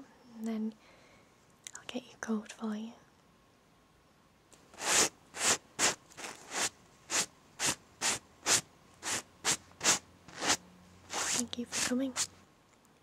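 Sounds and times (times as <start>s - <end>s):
brush swishing over fabric: 4.8s - 12.3s.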